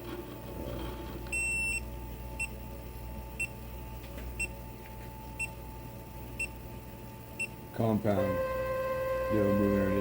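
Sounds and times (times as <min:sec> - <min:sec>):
electrical hum: 0:00.0 - 0:10.0.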